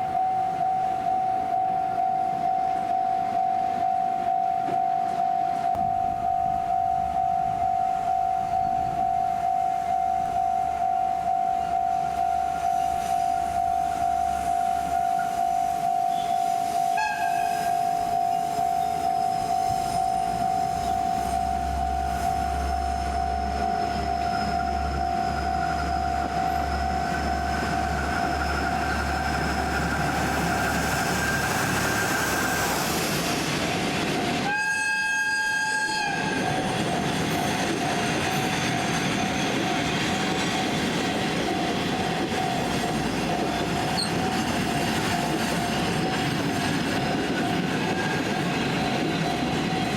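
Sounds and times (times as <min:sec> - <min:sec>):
level crossing warning signal: 0:00.0 - 0:32.8
train rumbling past: 0:00.0 - 0:49.9
train horn: 0:00.1 - 0:27.4, 0:34.4 - 0:36.6.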